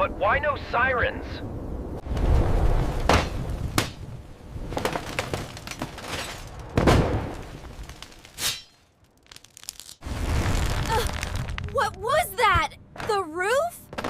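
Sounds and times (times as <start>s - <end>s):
crashes and thuds of debris: 2.0s - 11.7s.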